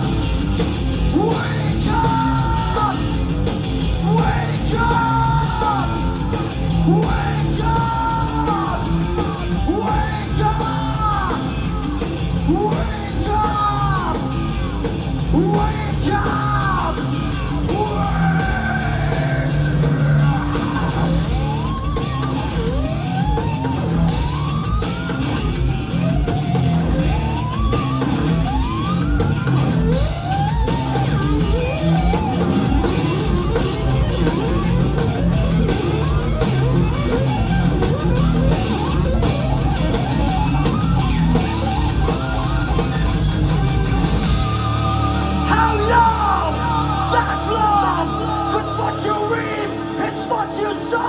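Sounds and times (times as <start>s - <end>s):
rock band playing: 0.0s - 51.0s
electric guitar sliding bends: 17.0s - 51.0s.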